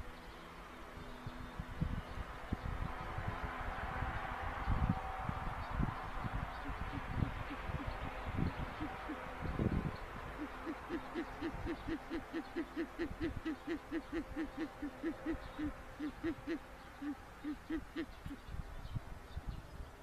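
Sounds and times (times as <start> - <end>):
owl hooting rapidly: 6.6 - 9.6, 10.3 - 18.4.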